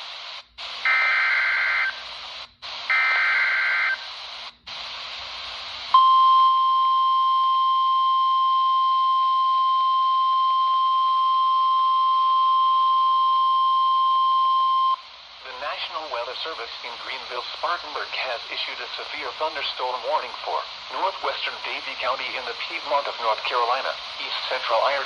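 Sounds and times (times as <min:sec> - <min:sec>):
static hiss: 0:00.0 - 0:06.0, 0:14.4 - 0:25.0.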